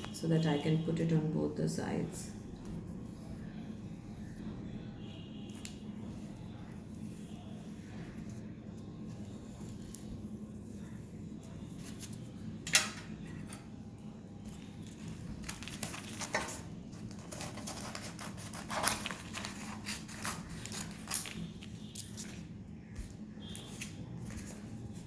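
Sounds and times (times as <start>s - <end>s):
scissors snipping paper: 14.9s - 22.4s.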